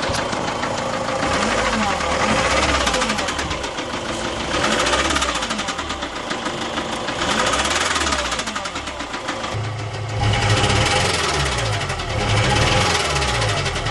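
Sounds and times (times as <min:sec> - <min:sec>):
diesel engine knocking: 0:00.0 - 0:13.9.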